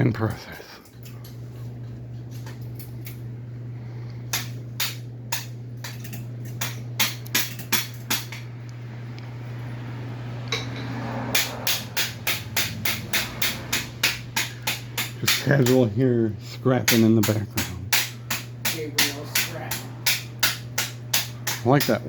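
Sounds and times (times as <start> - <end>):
steady low hum: 0.0 - 22.0
metal scrap being hammered: 4.3 - 8.5, 10.5 - 16.0, 16.7 - 22.0.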